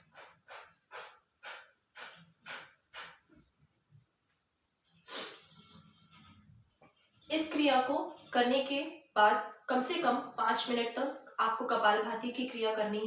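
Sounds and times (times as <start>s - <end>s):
forceful exhalations through nose: 0.0s - 3.4s, 5.0s - 5.5s.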